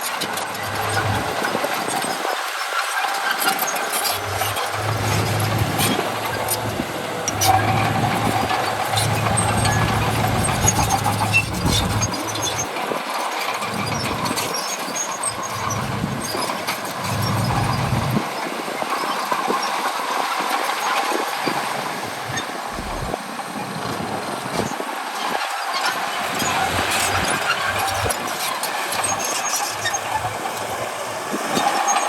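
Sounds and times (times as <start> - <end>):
steel tracks whining: 0.0 - 32.0
diesel engine hum: 0.2 - 2.3, 3.6 - 13.0, 13.6 - 18.7, 21.6 - 24.5.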